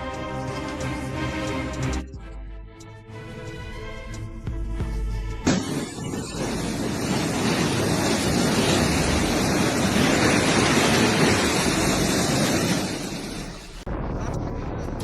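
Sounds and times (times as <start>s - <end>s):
loud steady rushing noise: 5.5s - 15.0s.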